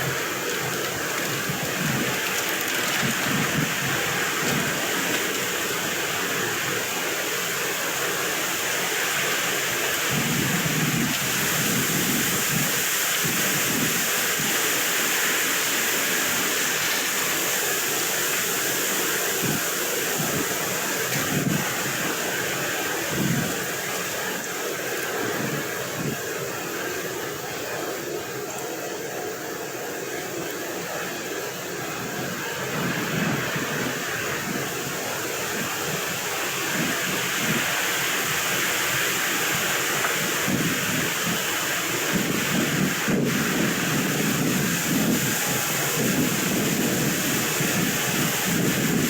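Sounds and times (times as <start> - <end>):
wind blowing across microphone: 0.0 - 49.0.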